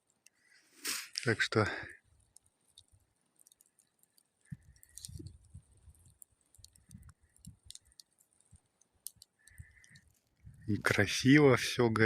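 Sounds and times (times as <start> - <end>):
campfire crackling and popping: 0.0 - 12.0
wind rumble on microphone: 4.5 - 7.7, 10.4 - 11.0.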